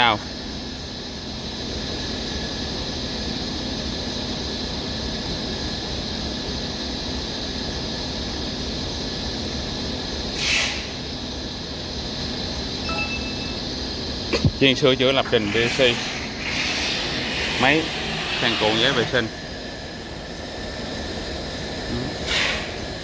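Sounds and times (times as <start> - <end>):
machine hum with high whine: 11.3 - 22.2.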